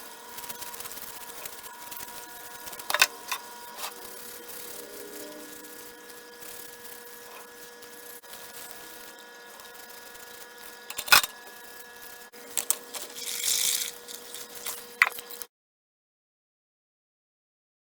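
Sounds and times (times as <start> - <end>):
metal tools clicking and clinking: 2.8 - 3.9, 10.9 - 11.4, 12.5 - 15.4
scraping rustle: 12.6 - 15.4.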